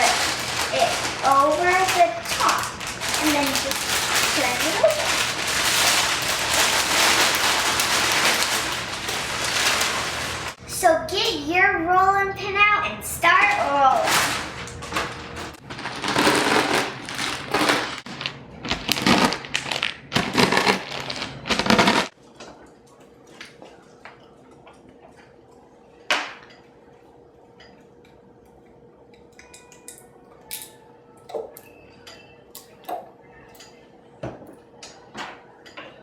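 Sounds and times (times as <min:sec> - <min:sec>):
chips crushed in plastic bag: 0:00.0 - 0:10.6, 0:13.5 - 0:22.2.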